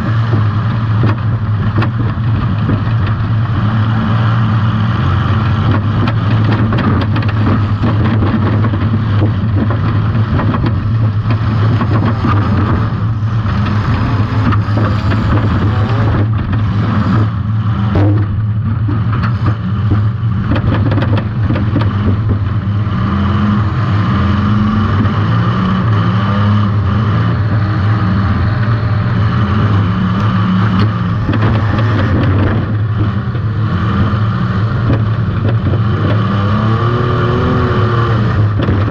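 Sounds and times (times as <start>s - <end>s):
knocks and clatter: 0.0s - 3.8s, 5.2s - 22.7s, 29.3s - 38.9s
car engine running under throttle: 0.0s - 38.9s.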